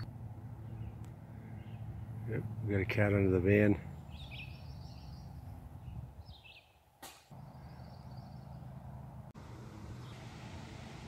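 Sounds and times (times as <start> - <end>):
small birds chirping: 0.0 - 2.7, 3.6 - 8.8.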